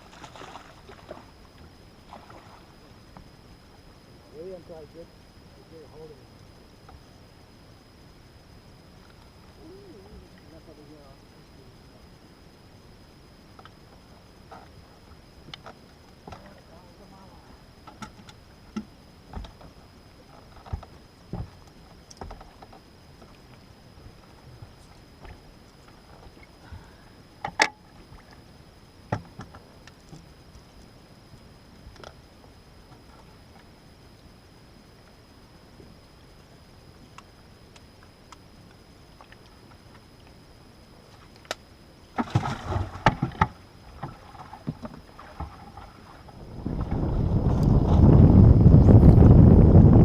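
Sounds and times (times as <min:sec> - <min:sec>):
faint ticks: 0:06.3 - 0:07.2, 0:08.8 - 0:09.6, 0:13.4 - 0:16.6, 0:17.8 - 0:41.7
sharp knocks and thumps: 0:42.2 - 0:45.6
wind rumbling on microphone: 0:42.2 - 0:50.0.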